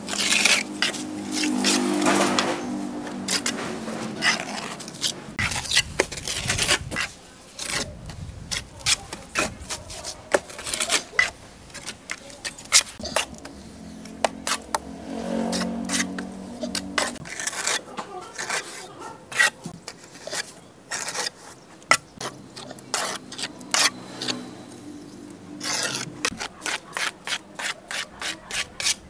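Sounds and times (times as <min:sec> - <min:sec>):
hand scraping and rubbing: 0:00.0 - 0:29.0
low hum: 0:13.0 - 0:17.2.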